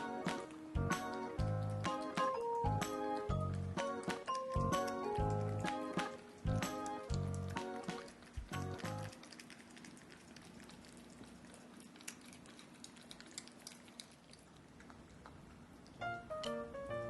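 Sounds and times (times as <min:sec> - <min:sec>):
music with plucked notes: 0:00.0 - 0:08.0, 0:16.0 - 0:17.0
low room hum: 0:00.0 - 0:17.0
cat licking with wet clicks: 0:00.3 - 0:16.1.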